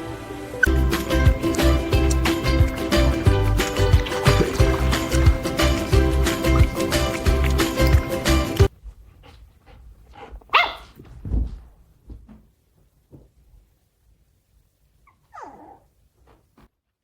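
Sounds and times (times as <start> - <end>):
dog barking: 10.2 - 11.0.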